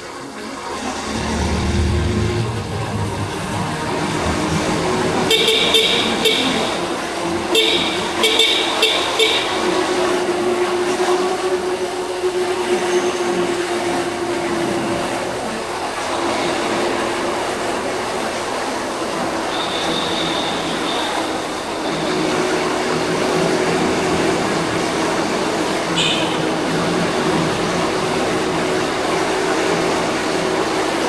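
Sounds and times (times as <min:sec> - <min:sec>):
city traffic drone: 0:00.0 - 0:31.0
motorcycle engine running: 0:01.1 - 0:09.6
vehicle horn short beeps: 0:05.3 - 0:06.9, 0:07.5 - 0:09.6, 0:26.0 - 0:26.4.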